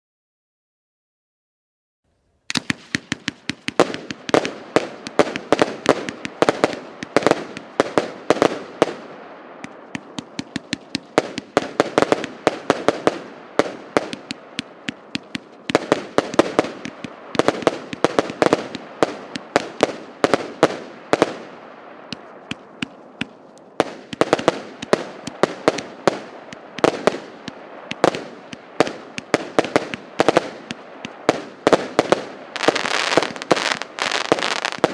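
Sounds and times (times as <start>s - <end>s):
fireworks battery rapid bangs: 2.5s - 34.9s.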